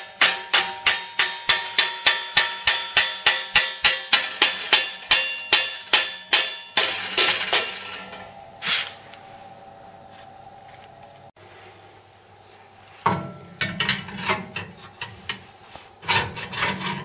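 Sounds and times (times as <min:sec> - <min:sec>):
hammer striking metal: 0:00.0 - 0:08.4.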